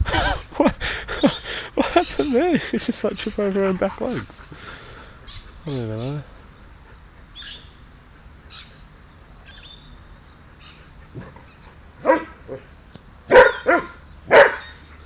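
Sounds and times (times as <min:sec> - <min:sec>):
dog barking: 0:12.0 - 0:12.4, 0:13.3 - 0:14.8.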